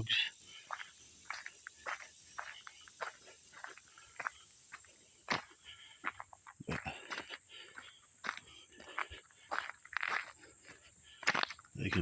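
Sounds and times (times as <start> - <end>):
high insect drone: 0.0 - 12.0
footsteps crunching on trail: 0.4 - 12.0.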